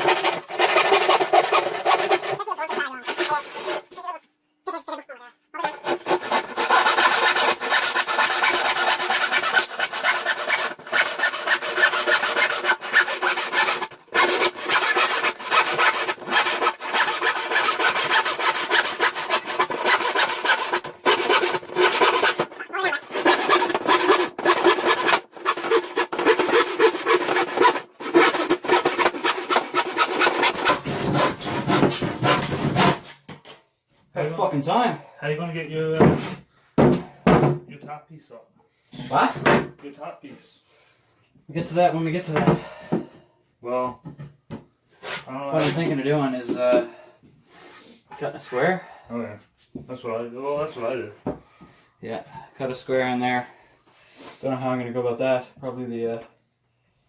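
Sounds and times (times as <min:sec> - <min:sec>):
hand saw cutting wood: 0:00.0 - 0:04.0, 0:05.6 - 0:33.2.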